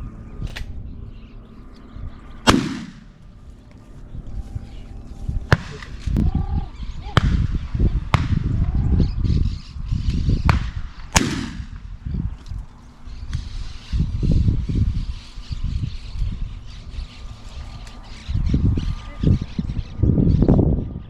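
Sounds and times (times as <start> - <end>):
wind rumble on microphone: 0.0 - 21.0
shotgun shots: 2.4 - 3.2, 5.5 - 5.9, 10.5 - 11.9.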